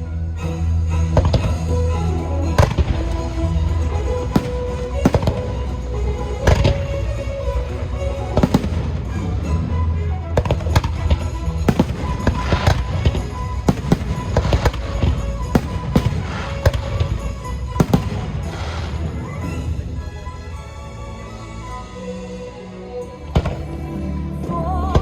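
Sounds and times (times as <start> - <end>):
music over loudspeakers: 0.0 - 21.8, 22.6 - 25.0
fireworks bangs: 2.6 - 7.3, 8.0 - 9.6, 10.4 - 19.7.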